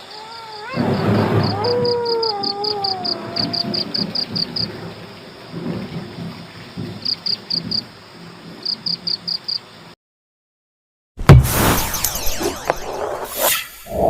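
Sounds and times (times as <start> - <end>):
crickets chirping: 0.0 - 5.9, 6.9 - 10.0
rain-like hiss: 0.0 - 10.0.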